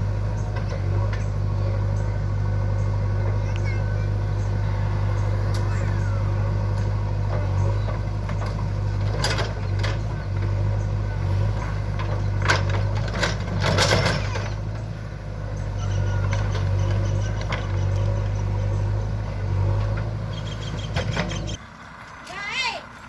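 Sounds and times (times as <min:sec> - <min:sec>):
diesel engine running: 0:00.0 - 0:23.0.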